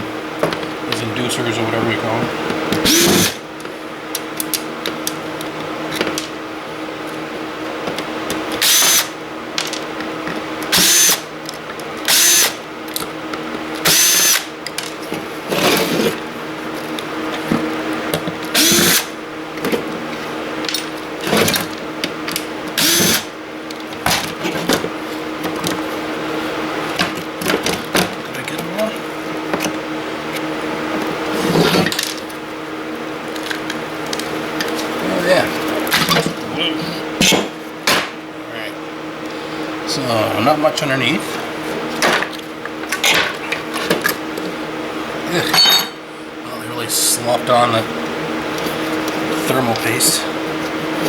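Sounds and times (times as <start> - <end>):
steady low hum: 0.0 - 51.0
power drill bursts: 2.8 - 3.4, 8.6 - 9.2, 10.7 - 11.2, 12.1 - 12.6, 13.8 - 14.5, 18.5 - 19.1, 22.8 - 23.3.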